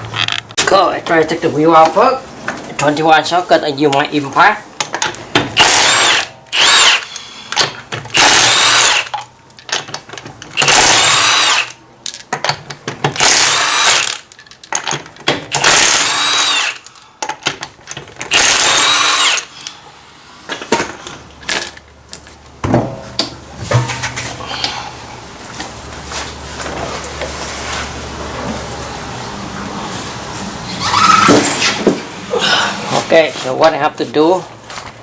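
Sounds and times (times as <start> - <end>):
impact wrench bursts: 5.5 - 9.3, 10.5 - 11.8, 13.1 - 14.3, 15.3 - 17.4, 18.2 - 19.7.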